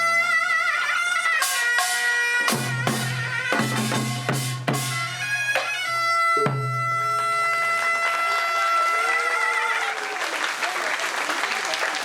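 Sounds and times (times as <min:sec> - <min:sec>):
drum strikes: 0:01.8 - 0:07.1.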